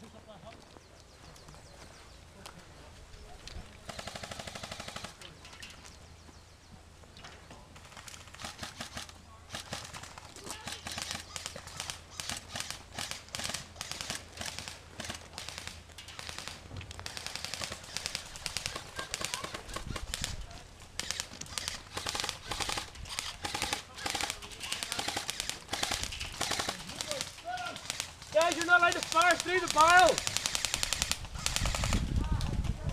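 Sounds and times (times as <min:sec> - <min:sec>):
airsoft guns firing full-auto: 0:03.9 - 0:05.2, 0:07.8 - 0:32.1.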